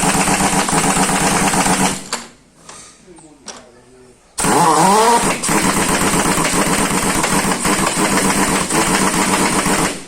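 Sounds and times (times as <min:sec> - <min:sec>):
air impact wrench buzzing: 0:00.0 - 0:02.3, 0:04.4 - 0:10.0.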